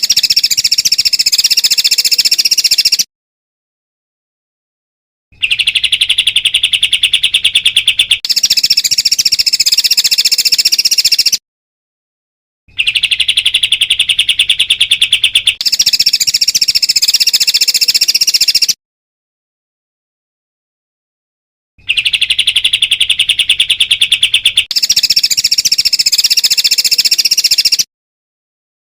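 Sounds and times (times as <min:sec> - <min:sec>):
songbird rapid trill: 0:00.0 - 0:03.1, 0:05.4 - 0:11.4, 0:12.7 - 0:18.8, 0:21.8 - 0:27.9.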